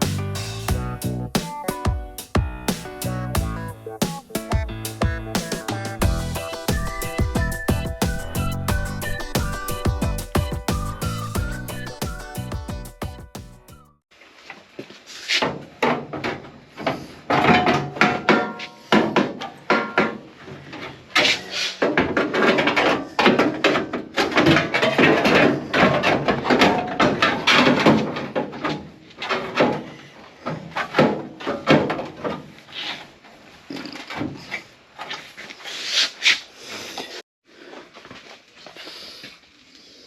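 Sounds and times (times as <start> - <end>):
sheet metal clanking and knocking: 17.3 - 20.2, 21.8 - 29.9.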